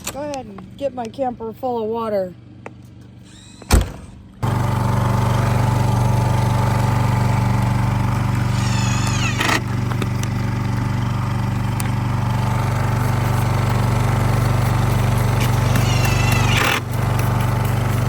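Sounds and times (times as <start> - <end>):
generator running: 4.2 - 18.0
high squeak sweeping down: 8.5 - 9.6.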